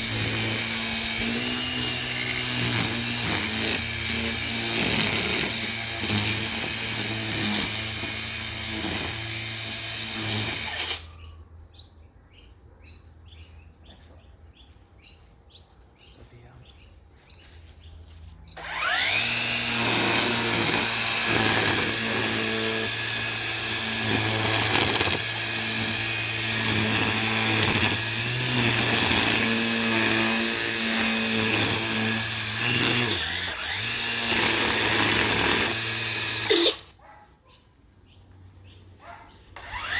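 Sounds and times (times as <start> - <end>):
line trimmer running: 0.0 - 11.2, 18.6 - 37.0, 39.6 - 39.9.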